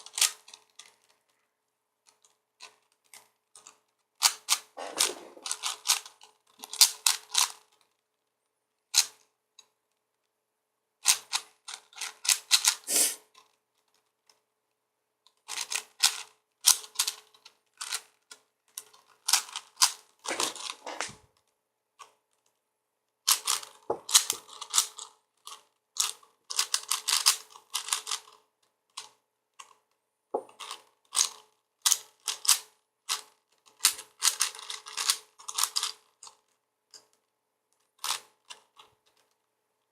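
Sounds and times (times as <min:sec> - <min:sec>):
puzzle cube plastic clicking: 0:02.2 - 0:07.7, 0:11.0 - 0:13.5, 0:23.3 - 0:29.8, 0:30.4 - 0:36.4.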